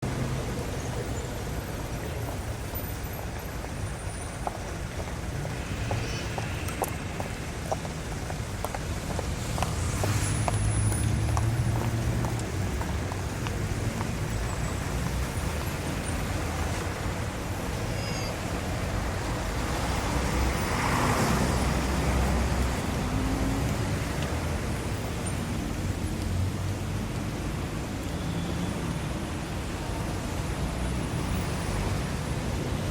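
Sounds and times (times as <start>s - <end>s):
street traffic rumble: 0.0s - 32.9s
vehicle passing by: 9.0s - 17.0s, 19.1s - 27.2s.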